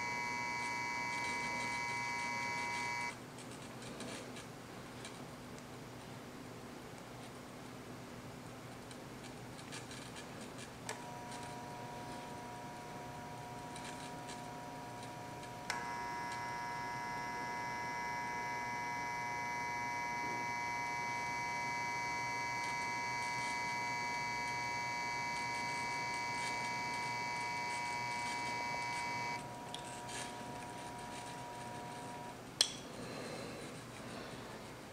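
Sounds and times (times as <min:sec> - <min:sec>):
led bulb high-pitched whine: 0:00.0 - 0:03.2, 0:10.7 - 0:34.0.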